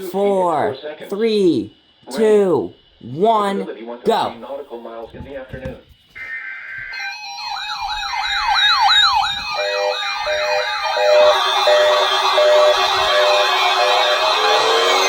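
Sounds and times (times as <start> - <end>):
siren yelping: 6.2 - 15.0.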